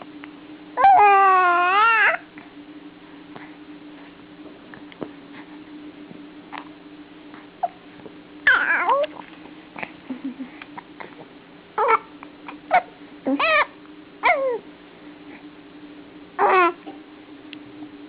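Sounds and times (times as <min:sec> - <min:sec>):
pet hiccupping with squeaky yelps: 0:11.8 - 0:14.6.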